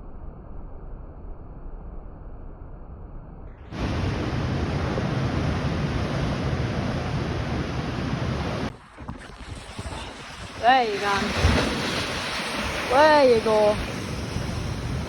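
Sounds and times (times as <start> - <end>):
wind: 0.0 - 15.0
water at the shore: 3.7 - 15.0.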